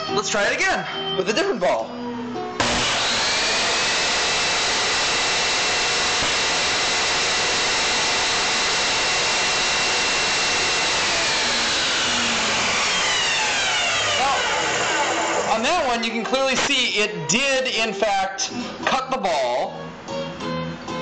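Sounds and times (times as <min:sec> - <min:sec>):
table saw running: 0:02.6 - 0:16.7.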